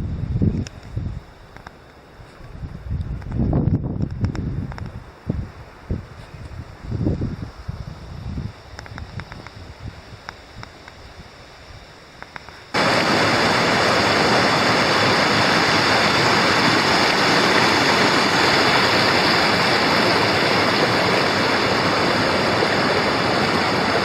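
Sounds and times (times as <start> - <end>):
mountain stream rushing: 12.8 - 24.0.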